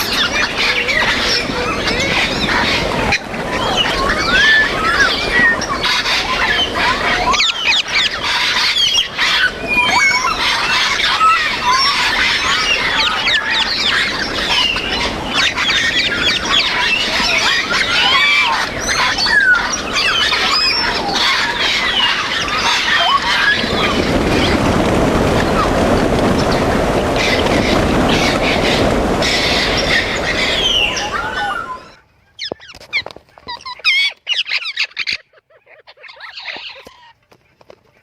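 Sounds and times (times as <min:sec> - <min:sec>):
steady rumbling noise: 0:00.0 - 0:32.0
parrots chattering: 0:30.6 - 0:37.2.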